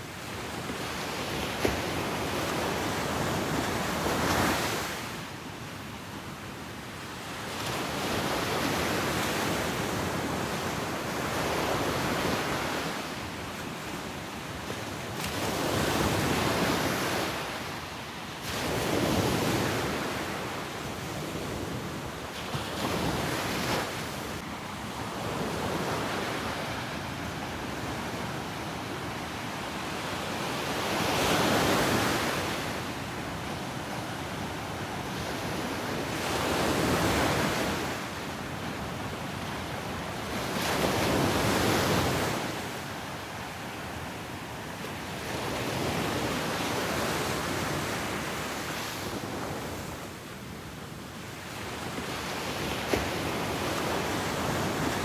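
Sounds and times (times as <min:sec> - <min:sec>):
ocean surf breaking on beach: 0:51.5 - 0:55.0.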